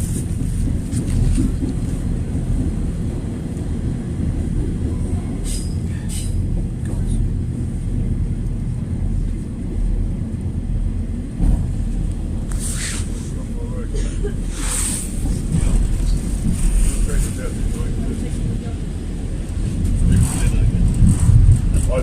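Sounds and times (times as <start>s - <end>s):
train rumbling: 0.0s - 22.0s.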